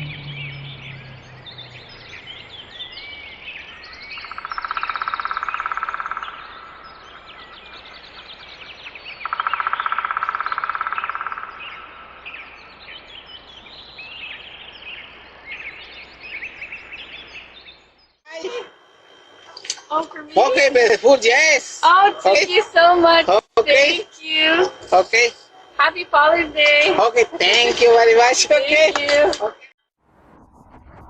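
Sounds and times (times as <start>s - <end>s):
low rumble: 0.0s - 2.9s, 30.0s - 31.0s
rapidly pulsed bird trills: 0.0s - 28.8s
birds chirping: 0.0s - 29.7s.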